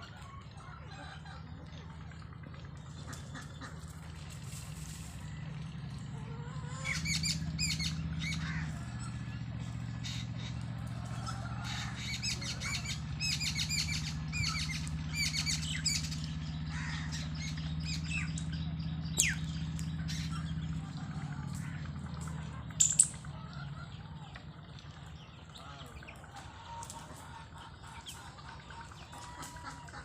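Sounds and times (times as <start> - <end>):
small birds chirping: 6.4 - 30.0.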